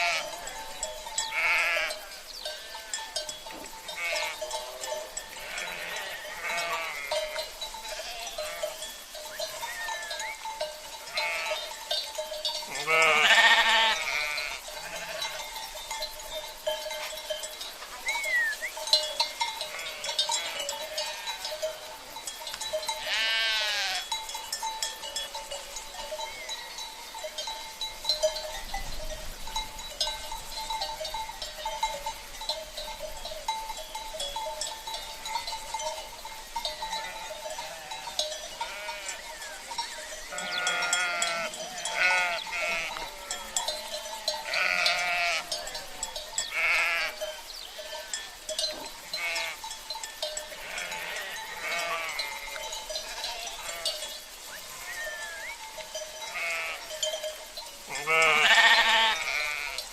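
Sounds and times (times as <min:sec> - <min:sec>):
sheep bleating: 0:00.0 - 0:00.4, 0:01.3 - 0:03.0, 0:03.9 - 0:04.4, 0:05.3 - 0:08.8, 0:11.1 - 0:11.7, 0:12.7 - 0:15.4, 0:19.6 - 0:21.6, 0:23.0 - 0:24.1, 0:37.0 - 0:39.6, 0:40.3 - 0:43.6, 0:44.2 - 0:45.6, 0:46.5 - 0:47.2, 0:49.1 - 0:49.6, 0:50.5 - 0:54.0, 0:56.3 - 0:56.9, 0:57.9 - 0:59.8
livestock bells clanking: 0:00.0 - 0:59.9.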